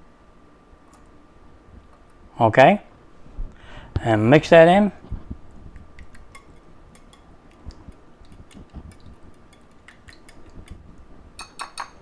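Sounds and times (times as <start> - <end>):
utensil clicking against bowl: 5.8 - 10.8, 11.4 - 12.0.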